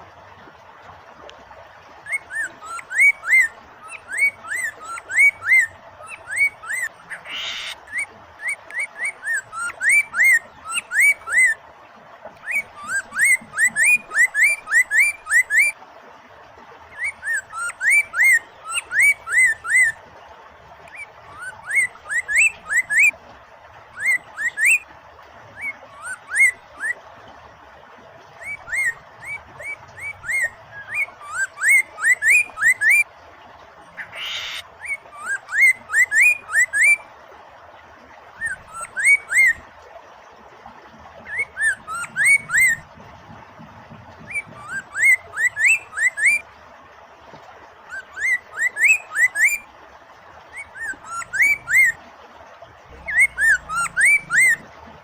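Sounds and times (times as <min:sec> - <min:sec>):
running water: 0:00.0 - 0:55.0
bird whistling upward notes: 0:02.1 - 0:11.6, 0:12.4 - 0:15.8, 0:16.9 - 0:20.0, 0:20.9 - 0:23.1, 0:24.0 - 0:24.8, 0:25.6 - 0:27.0, 0:28.4 - 0:33.1, 0:34.0 - 0:37.0, 0:38.4 - 0:39.6, 0:41.3 - 0:42.8, 0:44.3 - 0:46.4, 0:47.9 - 0:49.6, 0:50.5 - 0:52.0, 0:53.0 - 0:54.6.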